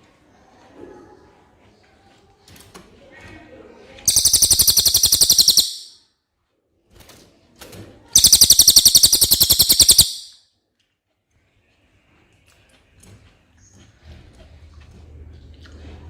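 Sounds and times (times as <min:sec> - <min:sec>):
songbird singing rapid high trills: 0:04.1 - 0:06.0, 0:08.2 - 0:10.4.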